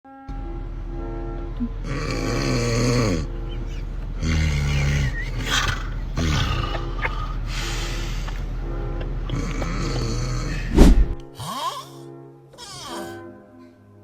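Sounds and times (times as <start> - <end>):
loud snoring and snorts: 1.8 - 7.5, 9.3 - 12.0
hissing breaths: 1.9 - 8.6, 9.3 - 13.3.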